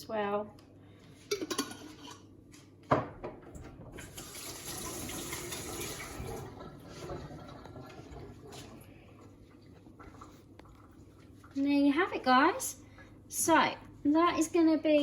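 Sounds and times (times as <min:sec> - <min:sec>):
water running from a tap: 0:04.0 - 0:08.8.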